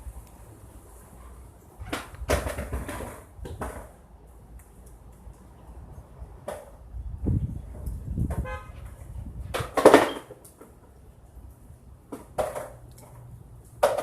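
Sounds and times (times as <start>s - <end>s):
wind gusting across microphone: 5.8s - 10.0s.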